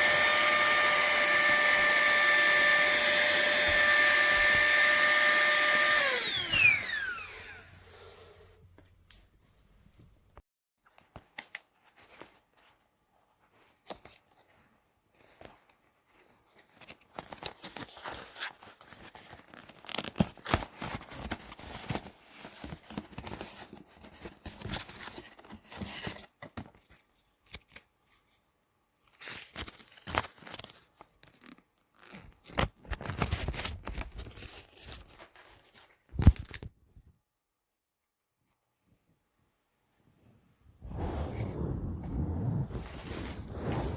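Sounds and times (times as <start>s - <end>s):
plastic crinkling and rustling: 13.5s - 28.4s, 29.0s - 36.8s.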